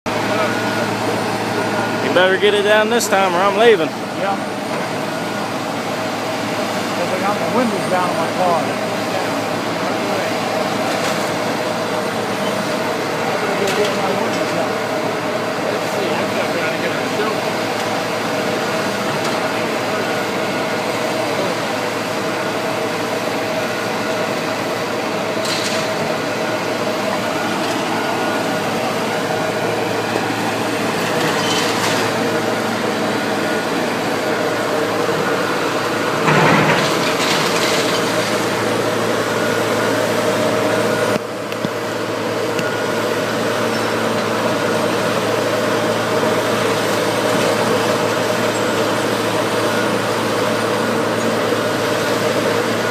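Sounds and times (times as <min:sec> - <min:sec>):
demolition machine engine running: 0:00.1 - 0:52.9
tower crashing down: 0:36.2 - 0:38.4.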